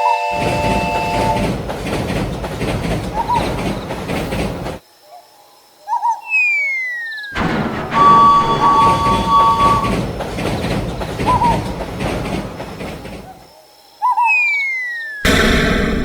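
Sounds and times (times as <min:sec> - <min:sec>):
train wheels rumbling: 0:00.3 - 0:04.8, 0:07.4 - 0:13.5, 0:15.3 - 0:16.0.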